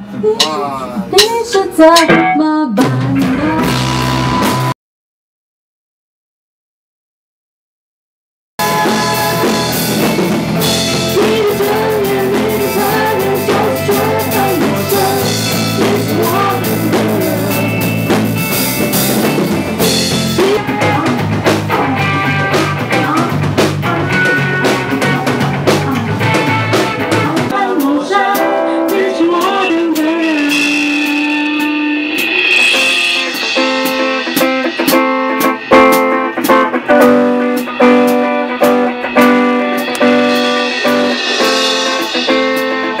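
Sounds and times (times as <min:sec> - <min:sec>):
drum kit: 0:00.0 - 0:04.7, 0:08.6 - 0:43.0
bass: 0:00.0 - 0:04.8, 0:08.6 - 0:43.0
electric guitar: 0:08.6 - 0:43.0
wavering melody line: 0:29.0 - 0:34.3.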